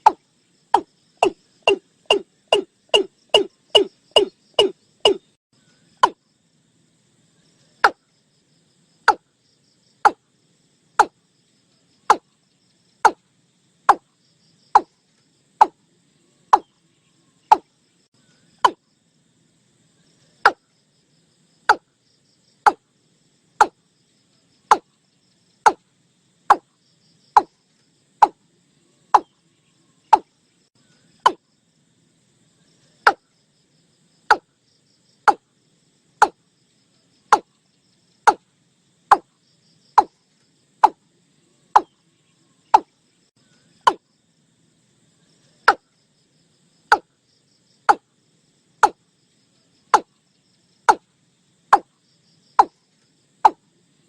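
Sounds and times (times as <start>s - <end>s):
faint insects trilling: 0.0s - 54.0s
bird calling short sharp notes: 1.2s - 5.3s.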